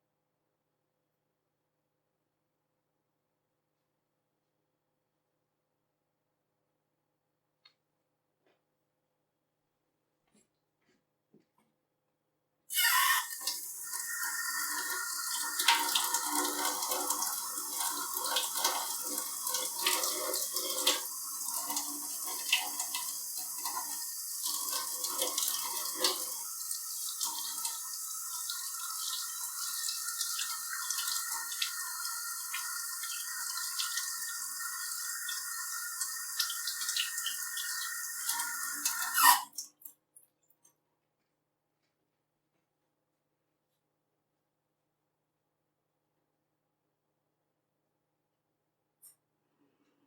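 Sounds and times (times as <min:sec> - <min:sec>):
tap water running into sink: 0:12.7 - 0:39.6
water dripping: 0:12.7 - 0:40.3.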